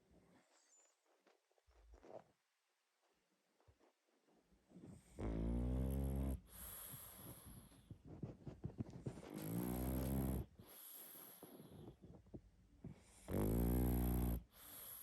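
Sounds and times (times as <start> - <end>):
dog snoring loudly: 5.2 - 7.4, 9.4 - 11.4, 13.2 - 15.0.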